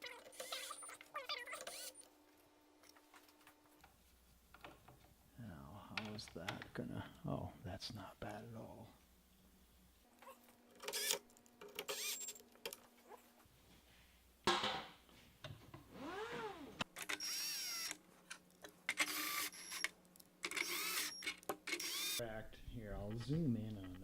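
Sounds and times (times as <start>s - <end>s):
small motor whirring: 0.0s - 2.0s, 10.8s - 11.2s, 11.8s - 12.4s, 16.0s - 18.0s, 18.9s - 19.9s, 20.5s - 22.2s.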